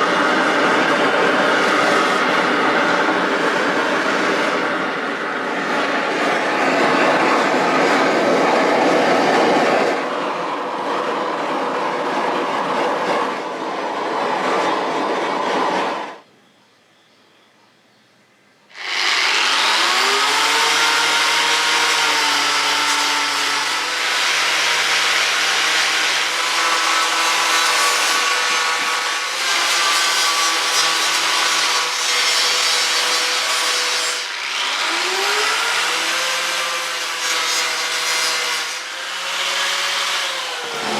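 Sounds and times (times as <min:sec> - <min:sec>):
abrasive power tool scouring metal: 0:18.7 - 0:40.9.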